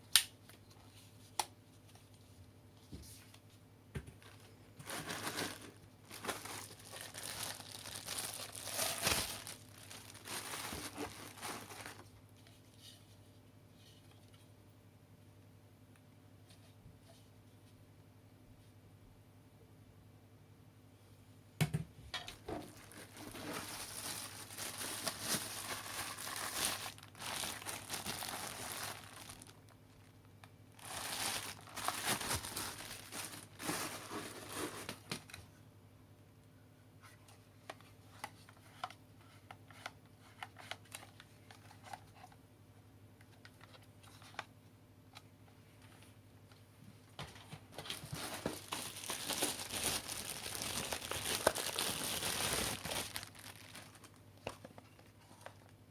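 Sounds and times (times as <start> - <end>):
packaging crinkling and rustling: 4.1 - 13.0, 22.4 - 35.4, 47.4 - 55.9.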